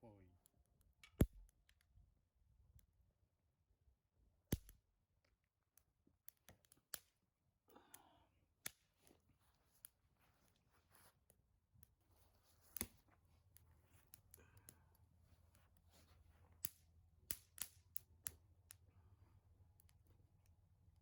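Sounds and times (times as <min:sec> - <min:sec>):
bonfire crackling and popping: 0:12.6 - 0:14.8, 0:16.6 - 0:18.8.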